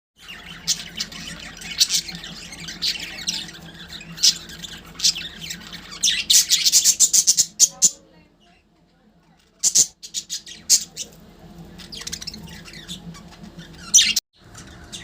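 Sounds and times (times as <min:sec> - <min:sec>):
budgerigars squawking: 0:00.2 - 0:08.0, 0:11.8 - 0:15.0.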